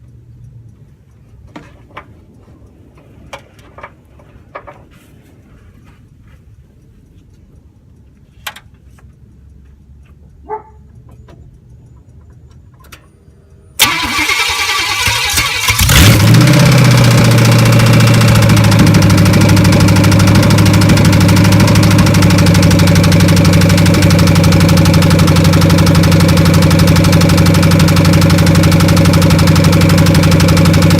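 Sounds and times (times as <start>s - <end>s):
starter cranking engine: 13.8s - 30.9s
truck engine running loud: 15.8s - 30.9s.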